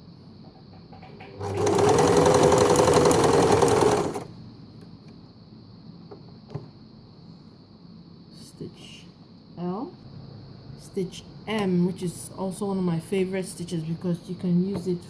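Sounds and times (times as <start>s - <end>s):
sewing machine running: 1.4s - 4.4s.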